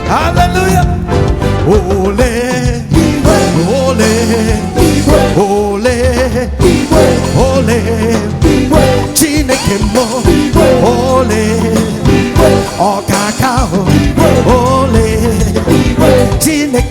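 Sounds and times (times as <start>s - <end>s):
live band playing: 0.0s - 16.9s
person singing: 0.0s - 16.9s.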